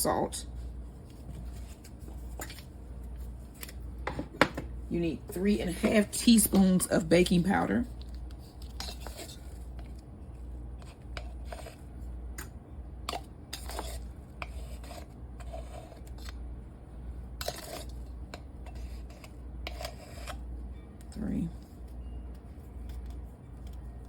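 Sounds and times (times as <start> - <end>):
spoon scooping powder: 5.7 - 16.5, 17.3 - 24.0.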